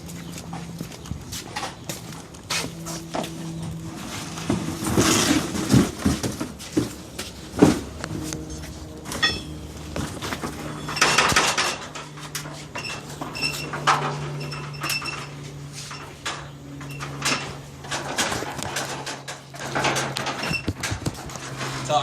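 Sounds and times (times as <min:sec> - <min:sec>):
steady low hum: 0:00.0 - 0:21.8
metal tools clanking: 0:08.4 - 0:22.0.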